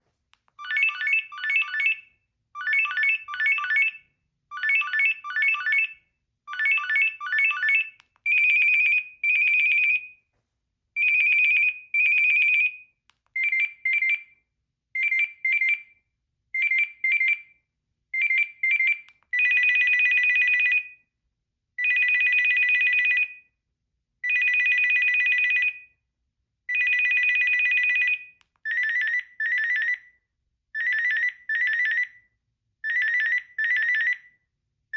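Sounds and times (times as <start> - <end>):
mobile phone ringtones: 0.6 - 10.2, 11.0 - 12.8, 13.4 - 14.3, 16.6 - 17.6, 18.2 - 21.0, 21.8 - 23.4, 24.2 - 25.8, 26.7 - 30.1, 30.8 - 32.2, 32.8 - 34.3.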